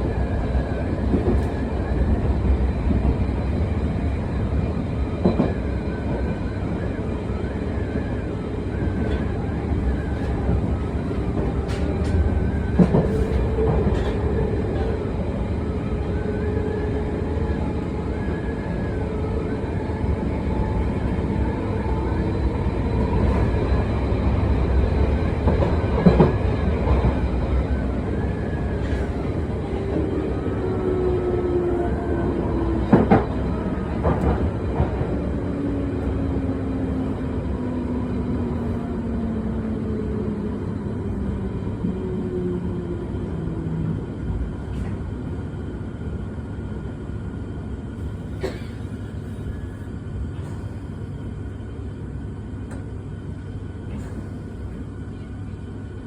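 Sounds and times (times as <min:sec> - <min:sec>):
train wheels rumbling: 0:19.3 - 0:45.3.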